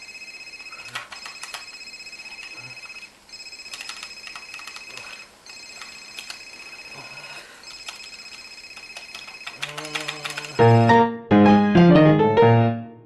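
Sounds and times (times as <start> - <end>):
alarm clock ringing: 0.0 - 9.6.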